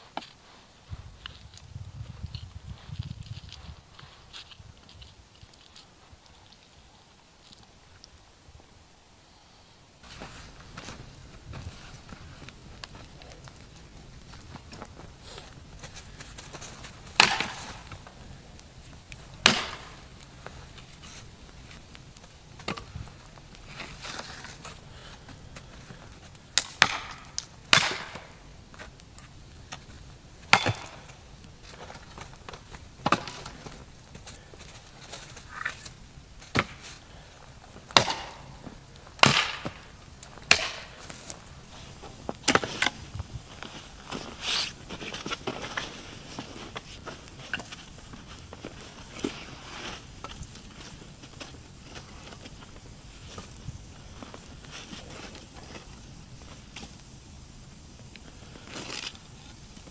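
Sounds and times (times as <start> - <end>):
wood being chopped: 16.7 - 18.1, 19.4 - 20.1, 26.6 - 28.4, 30.5 - 31.2, 32.4 - 33.5, 36.5 - 36.9, 37.8 - 38.6, 39.2 - 41.2.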